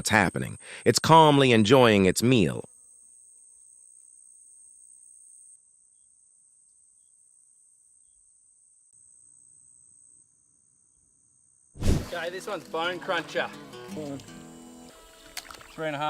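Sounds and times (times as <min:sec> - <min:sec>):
insect chorus chirring: 0:14.3 - 0:16.0.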